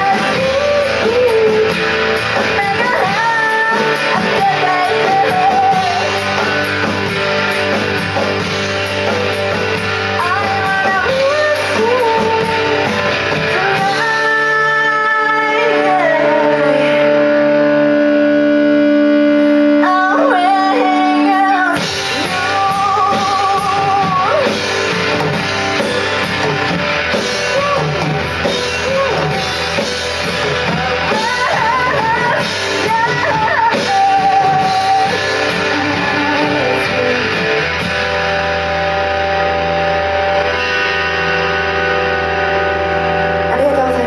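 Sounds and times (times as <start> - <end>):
person singing: 0.0 - 6.6, 10.1 - 38.4
drum kit: 0.0 - 44.0
electric guitar: 0.0 - 44.0.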